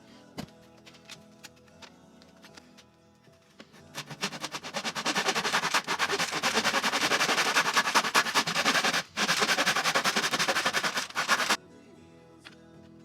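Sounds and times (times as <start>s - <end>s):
power tool rattling: 4.0s - 11.6s.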